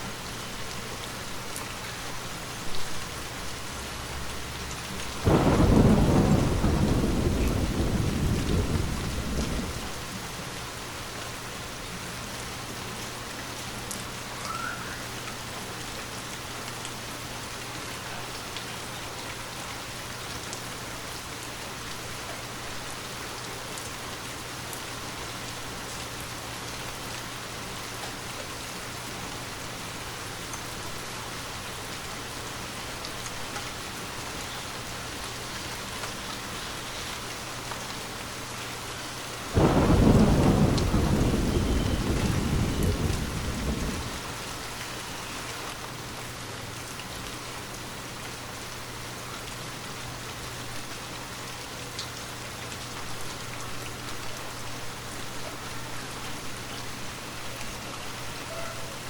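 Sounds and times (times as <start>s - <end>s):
steady rain falling: 0.0s - 59.0s
deep thunder rumble: 5.2s - 10.0s, 39.6s - 44.3s.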